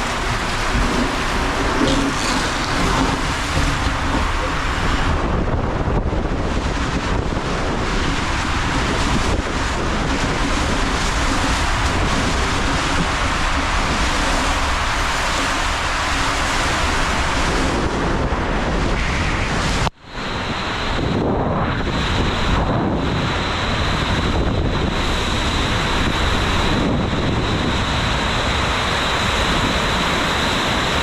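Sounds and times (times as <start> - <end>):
water rushing through slide tube: 0.0 - 19.9
wind on microphone: 0.0 - 31.0.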